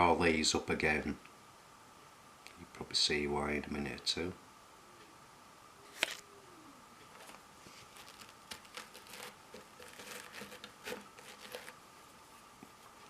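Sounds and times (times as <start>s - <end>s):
light rustling: 7.0s - 13.0s.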